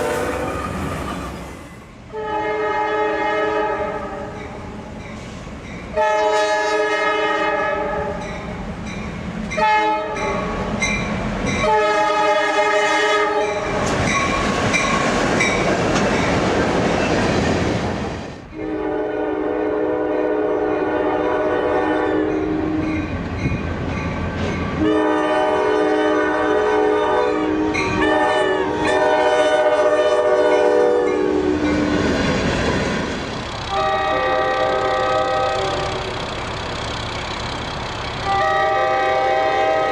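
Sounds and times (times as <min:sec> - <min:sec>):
locomotive air horn blasts: 0:00.0 - 0:00.6, 0:02.1 - 0:04.3, 0:05.9 - 0:08.2, 0:09.6 - 0:10.5, 0:11.6 - 0:13.6, 0:18.6 - 0:22.8, 0:24.8 - 0:31.7, 0:33.7 - 0:36.1, 0:38.2 - 0:39.9
passing train rumble: 0:00.0 - 0:39.9.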